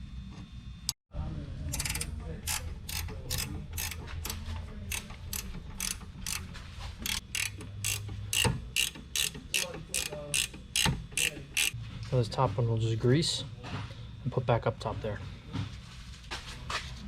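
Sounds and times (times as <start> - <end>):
ratchet wrench clicking: 1.7 - 11.8.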